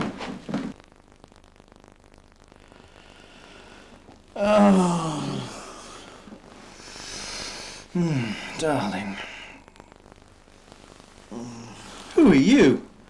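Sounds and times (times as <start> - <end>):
man groaning: 4.4 - 6.2, 7.9 - 9.9, 11.3 - 12.7.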